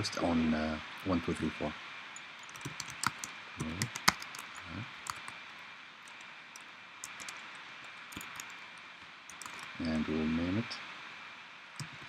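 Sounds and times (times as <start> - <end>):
steady background hiss: 0.0 - 12.0
keyboard and mouse clicks: 2.4 - 5.4, 6.1 - 9.8, 11.8 - 12.0.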